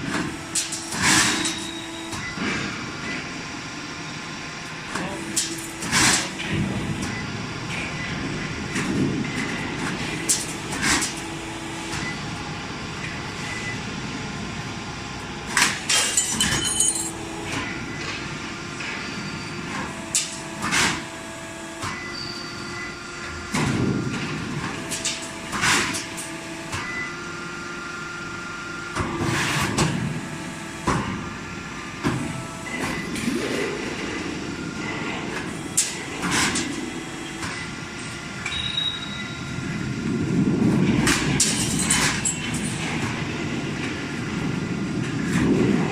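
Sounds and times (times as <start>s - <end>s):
steady machine noise with tones: 0.0s - 45.9s
sharp metal clanks and bangs: 15.8s - 17.2s.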